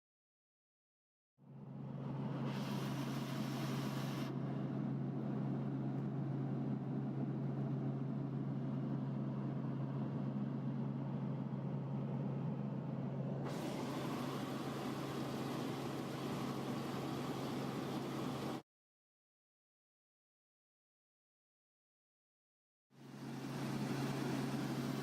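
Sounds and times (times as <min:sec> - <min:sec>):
helicopter drone: 0:01.4 - 0:18.6, 0:23.0 - 0:25.0.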